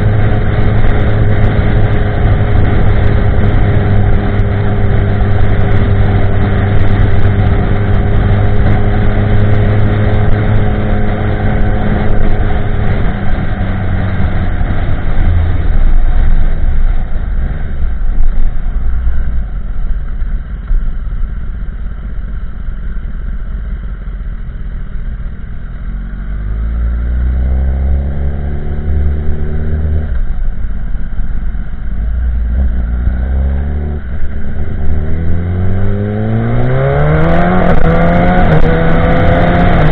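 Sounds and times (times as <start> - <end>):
motorcycle engine revving: 0.0 - 17.8, 25.8 - 30.4, 32.0 - 39.9.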